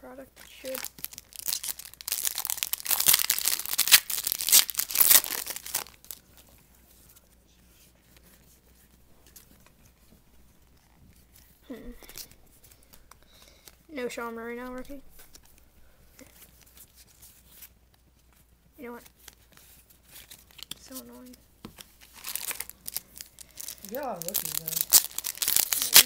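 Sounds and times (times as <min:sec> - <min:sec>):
wrapper being torn and crinkled: 0:00.4 - 0:06.3, 0:20.0 - 0:21.3, 0:22.0 - 0:26.0.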